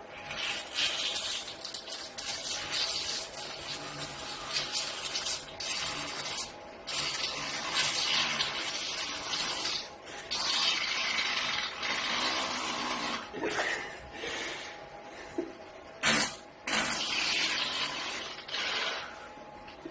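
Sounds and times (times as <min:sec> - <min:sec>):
person farting: 0:16.0 - 0:18.9.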